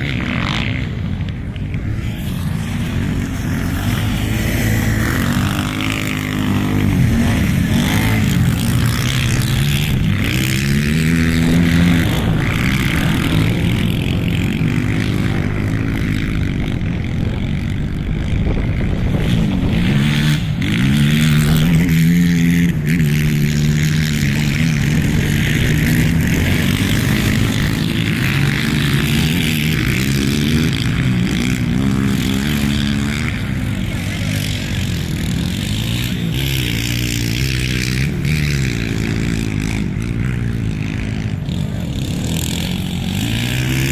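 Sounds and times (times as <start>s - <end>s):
quad bike engines revving: 0.0s - 43.9s.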